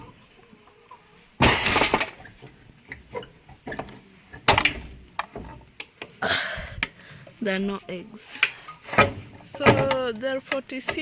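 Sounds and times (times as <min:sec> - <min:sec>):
wooden hatch knocking and scraping: 0:01.4 - 0:05.8, 0:08.9 - 0:11.0.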